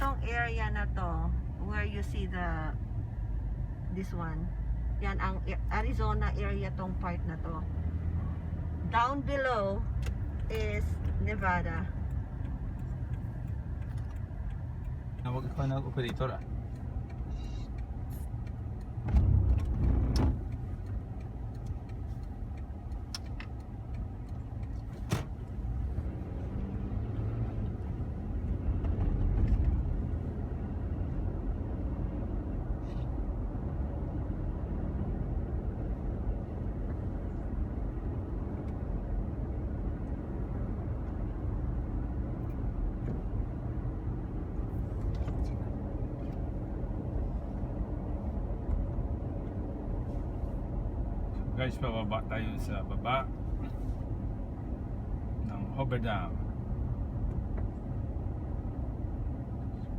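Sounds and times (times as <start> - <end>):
car engine and road noise: 0.0 - 59.9
sharp clicks and knocks: 16.0 - 25.6.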